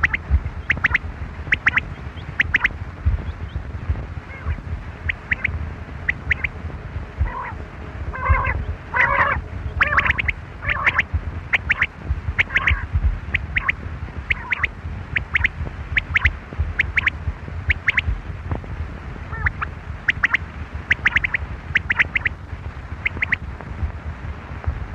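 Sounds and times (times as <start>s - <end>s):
quail calling: 0.0s - 2.7s, 4.3s - 6.5s, 7.2s - 18.1s, 19.3s - 22.3s, 23.0s - 23.4s
low rumble: 0.0s - 24.9s
harsh rasping bird calls: 4.3s - 5.5s, 6.1s - 6.5s, 7.3s - 17.1s, 19.3s - 22.3s, 23.0s - 23.4s.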